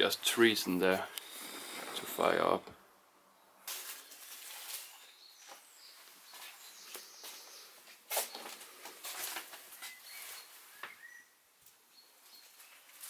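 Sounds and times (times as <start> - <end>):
footsteps crunching over debris: 3.7 - 10.9
bird chirps: 4.8 - 7.8, 9.7 - 12.8.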